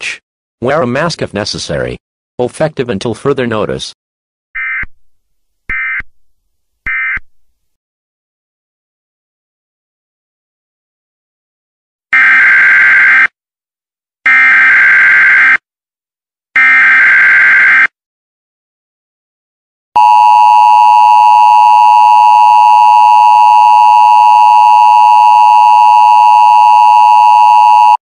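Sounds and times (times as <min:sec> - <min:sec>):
steady two-tone attention signal: 0:20.0 - 0:28.0.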